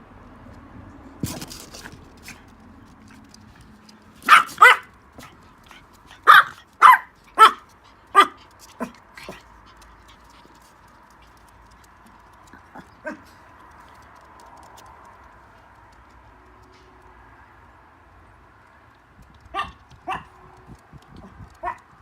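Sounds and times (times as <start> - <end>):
dog barking: 4.2 - 5.3, 6.1 - 9.4, 19.5 - 20.4, 21.6 - 21.8.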